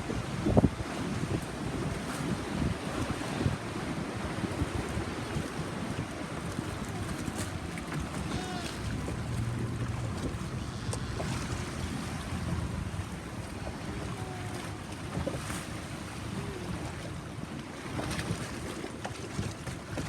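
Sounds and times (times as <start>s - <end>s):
boat motor running: 0.0s - 20.0s
water washing past hull: 0.0s - 20.0s
wind buffeting microphone: 0.0s - 20.0s.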